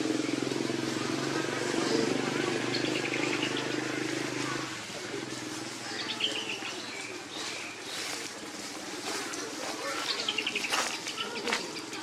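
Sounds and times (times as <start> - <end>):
outdoor background noise: 0.0 - 12.0
high chirping calls: 1.9 - 4.4, 5.9 - 8.2, 9.7 - 12.0.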